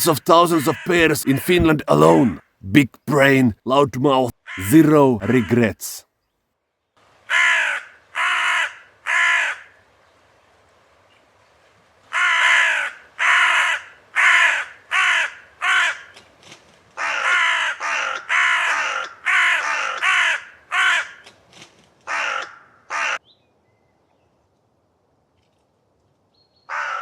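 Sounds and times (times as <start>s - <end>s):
crow cawing: 7.3s - 9.8s, 12.1s - 16.1s, 17.0s - 21.2s, 22.1s - 23.2s, 26.7s - 27.0s.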